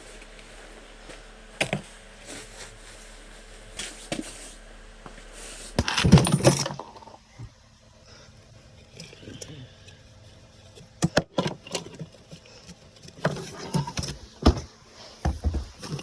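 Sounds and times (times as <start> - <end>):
gear clattering and rattling: 5.8 - 7.2.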